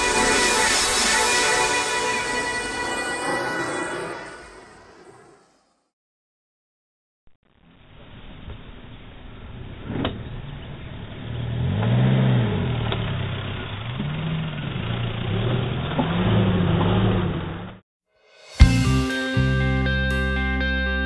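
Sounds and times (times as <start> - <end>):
car engine revving: 9.8 - 17.8.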